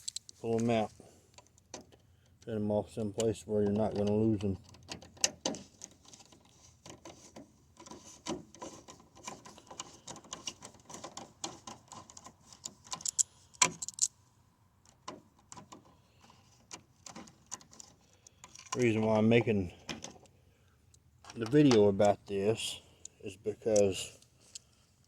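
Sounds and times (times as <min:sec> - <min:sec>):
metallic clicks of screws and screwdriver: 0:08.6 - 0:14.2.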